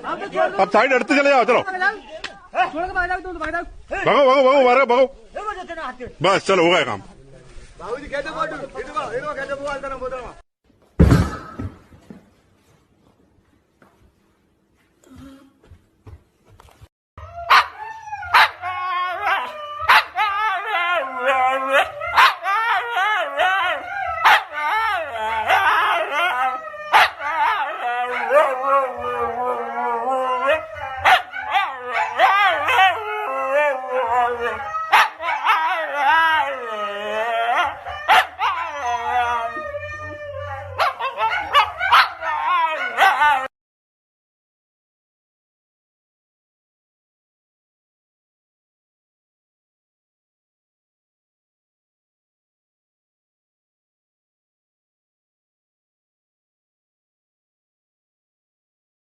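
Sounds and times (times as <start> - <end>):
dog whining howl: 17.2 - 43.5
dog barking: 17.5 - 18.6, 19.9 - 20.2, 21.8 - 22.5, 24.2 - 24.5, 26.9 - 27.2, 31.0 - 32.8, 34.9 - 35.6, 38.1 - 38.6, 40.8 - 43.5.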